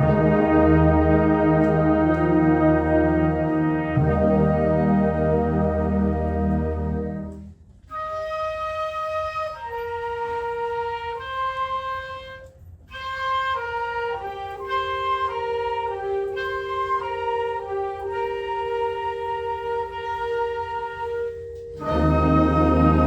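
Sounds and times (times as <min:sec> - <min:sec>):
sustained woodwind lines: 0:00.0 - 0:23.0
concert band playing: 0:21.8 - 0:23.0.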